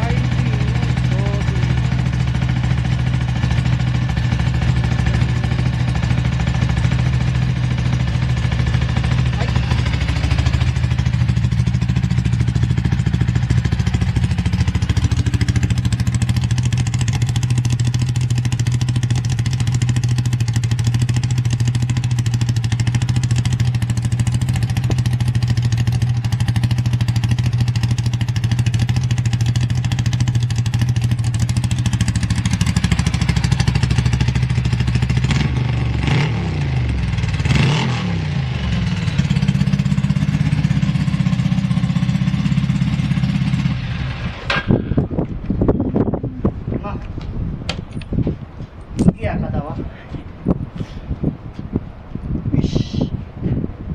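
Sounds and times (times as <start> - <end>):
motorcycle engine idling: 0.0 - 46.7.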